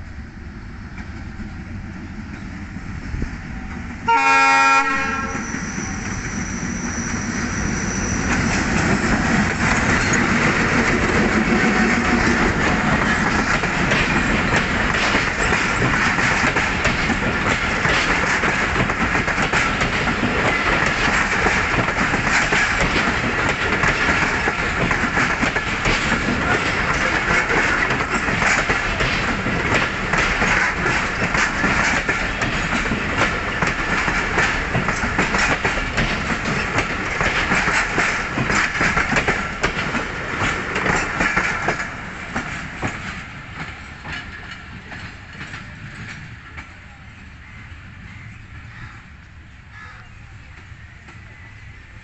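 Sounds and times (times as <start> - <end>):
train rumble and rail noise: 0.0 - 52.0
train wheels clacking over rail joints: 3.6 - 49.0.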